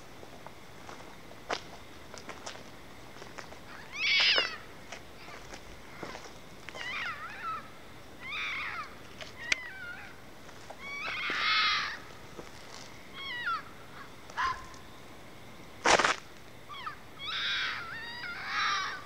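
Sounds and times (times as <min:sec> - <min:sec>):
fox screeching calls: 0:03.7 - 0:04.7, 0:06.7 - 0:12.1, 0:13.1 - 0:14.8, 0:16.7 - 0:19.0.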